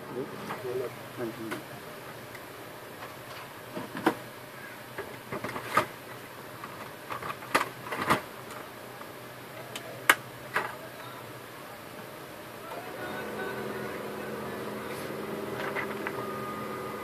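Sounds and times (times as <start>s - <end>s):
steady low hum: 12.1s - 17.0s.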